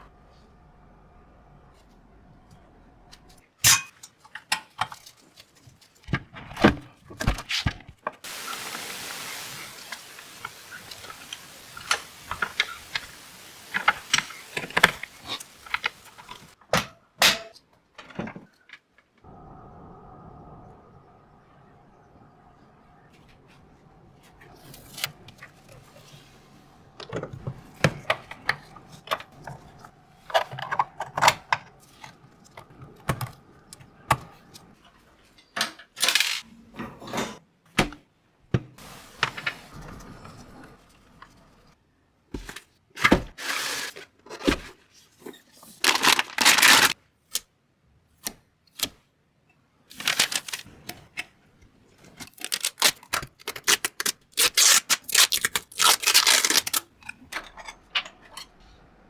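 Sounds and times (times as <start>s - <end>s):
packaging rustling and tearing: 45.6s - 47.0s, 49.9s - 50.8s, 52.2s - 56.9s.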